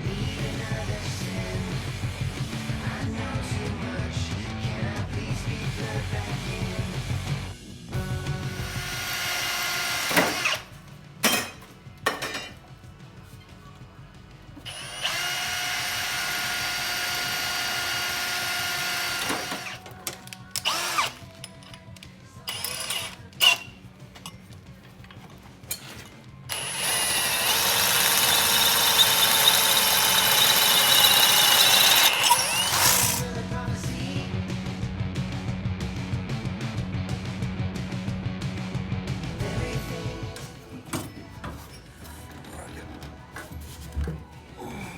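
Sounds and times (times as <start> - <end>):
power drill running: 8.4 - 10.7, 14.6 - 19.8, 20.6 - 21.4, 22.5 - 23.8, 26.5 - 33.3.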